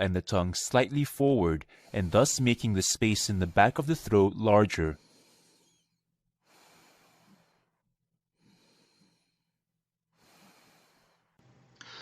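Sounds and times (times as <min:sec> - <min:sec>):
faint slow breathing: 0:01.6 - 0:02.7, 0:04.9 - 0:12.0.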